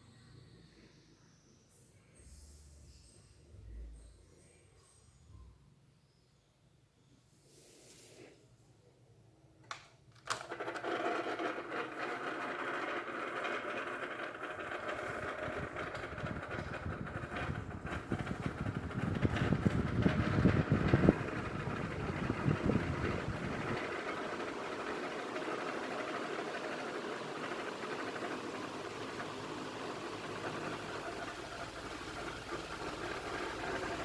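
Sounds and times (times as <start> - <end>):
electric fan rattling: 9.7 - 34.0.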